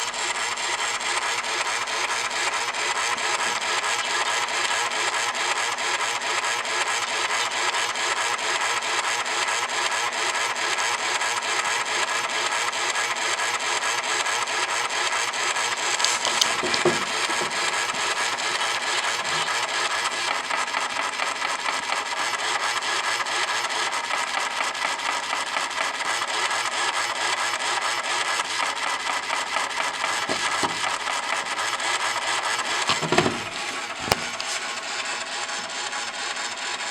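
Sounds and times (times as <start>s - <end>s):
short knock: 16.0s - 19.6s, 30.3s - 31.0s, 32.9s - 34.5s.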